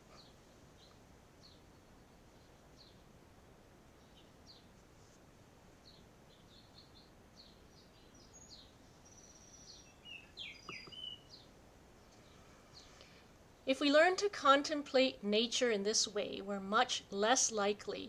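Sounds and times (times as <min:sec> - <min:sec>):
small birds chirping: 0:00.0 - 0:03.2, 0:03.8 - 0:05.1, 0:05.7 - 0:13.3.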